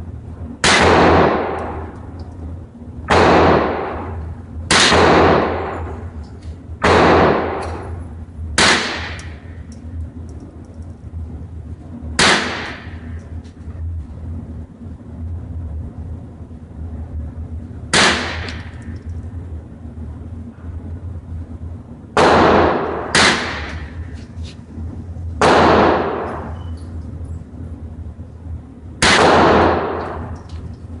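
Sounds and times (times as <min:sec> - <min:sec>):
steady low hum: 0:00.0 - 0:31.0
rifle shots with ringing echo: 0:00.6 - 0:02.0, 0:03.1 - 0:06.1, 0:06.8 - 0:08.0, 0:08.6 - 0:09.5, 0:12.2 - 0:13.2, 0:17.9 - 0:18.8, 0:22.2 - 0:24.0, 0:25.4 - 0:26.7, 0:29.0 - 0:30.4.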